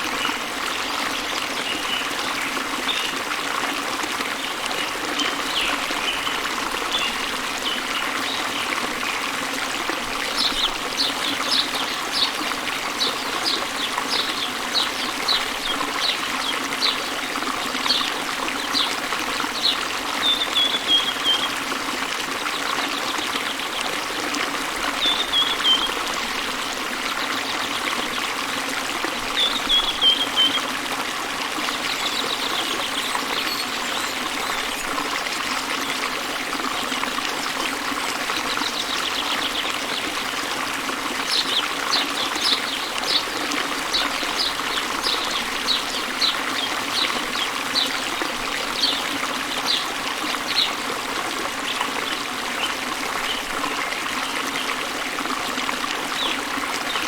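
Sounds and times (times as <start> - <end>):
birds singing: 10.2 - 21.7, 24.9 - 28.2, 29.3 - 30.8, 31.6 - 35.0, 37.6 - 50.9
waterfall rushing: 38.3 - 54.4.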